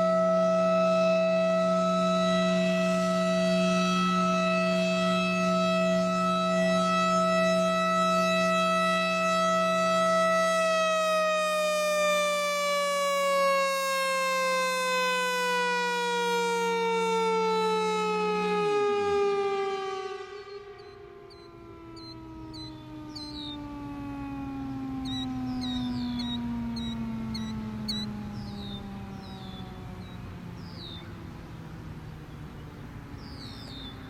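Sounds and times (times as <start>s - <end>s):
warning siren winding down: 0.0s - 34.0s
low drone: 20.4s - 34.0s.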